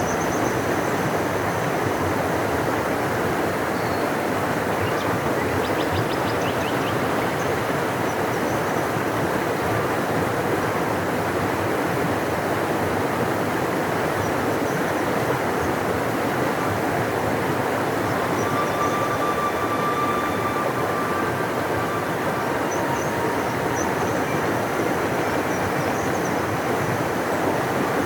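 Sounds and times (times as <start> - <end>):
river roaring: 7.0 - 28.0
faint high bird chirps: 18.0 - 26.4.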